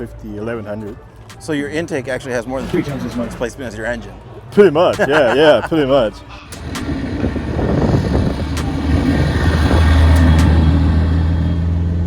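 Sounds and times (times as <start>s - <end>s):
engine running: 6.4s - 12.0s.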